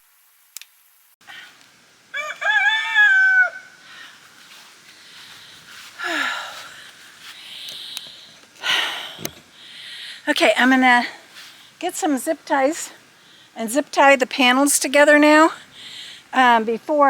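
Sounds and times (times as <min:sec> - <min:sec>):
rooster crowing: 0:02.1 - 0:04.2.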